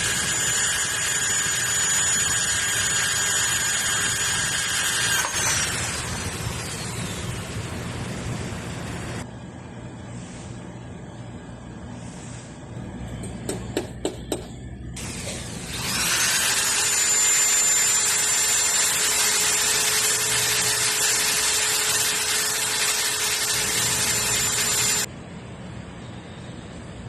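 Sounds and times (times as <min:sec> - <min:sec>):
electric drill whining: 0:00.0 - 0:07.6, 0:15.0 - 0:25.1.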